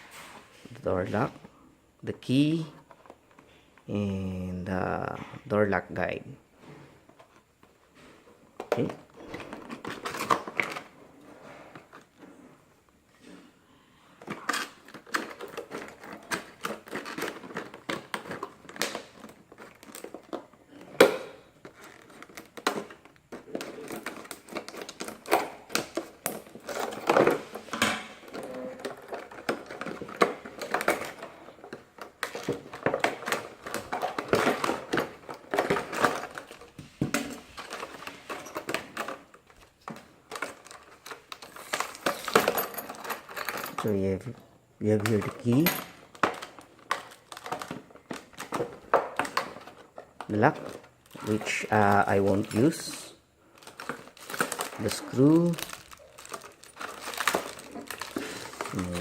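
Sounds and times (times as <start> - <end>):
lock parts and packaging clicking: 8.6 - 11.0, 14.2 - 59.0.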